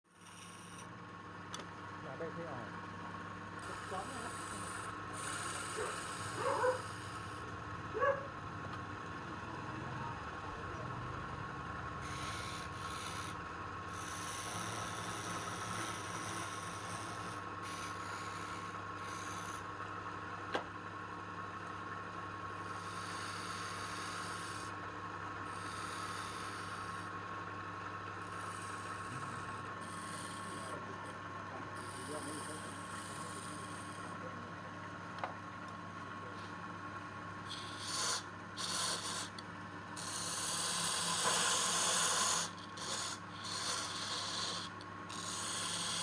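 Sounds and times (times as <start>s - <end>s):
power tool humming: 0.1s - 0.9s, 3.2s - 7.6s, 11.1s - 19.7s, 22.5s - 24.8s, 25.4s - 27.2s, 27.8s - 31.2s, 31.8s - 34.3s, 37.4s - 39.4s, 40.0s - 46.0s
wood rasping against tool: 0.1s - 0.9s, 12.0s - 19.6s.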